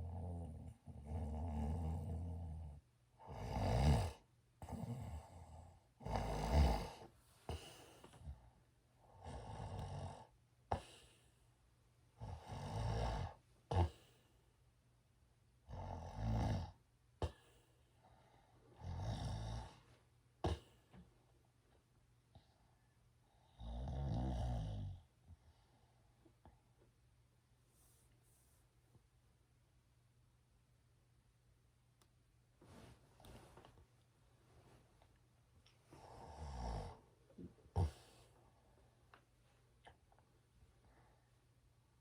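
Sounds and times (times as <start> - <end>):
person snoring raspily: 3.3 - 5.4, 6.0 - 7.0, 36.1 - 37.0.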